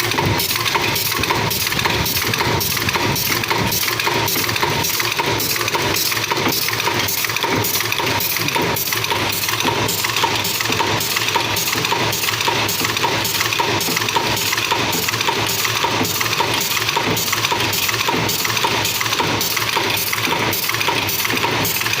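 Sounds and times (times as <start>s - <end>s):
machine clattering metallically: 0.0s - 22.0s
steady machine hum: 0.0s - 22.0s.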